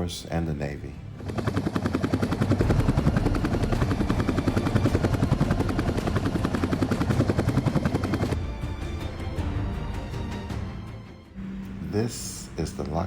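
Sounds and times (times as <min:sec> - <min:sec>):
helicopter rotor chopping: 0:00.8 - 0:10.2, 0:11.4 - 0:13.0
turbine drone: 0:00.9 - 0:13.0.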